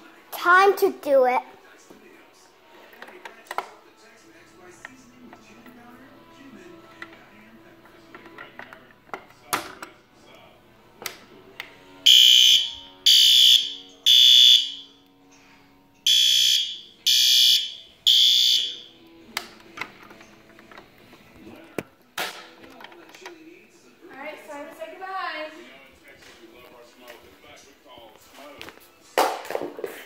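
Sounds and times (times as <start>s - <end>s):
high-pitched fire alarm blasts: 12.1s - 15.0s, 16.1s - 18.9s.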